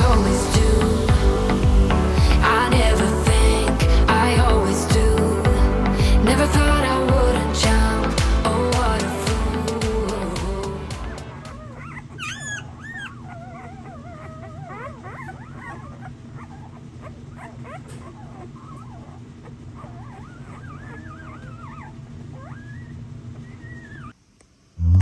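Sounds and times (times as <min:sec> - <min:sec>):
steady low hum: 0:00.0 - 0:12.2
dog whining and whimpering: 0:11.5 - 0:24.2.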